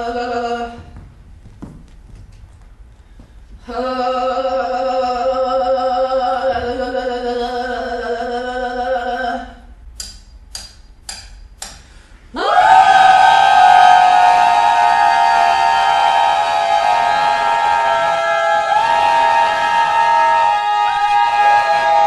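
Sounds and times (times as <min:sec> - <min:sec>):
high held vocal wail: 0:12.3 - 0:22.0.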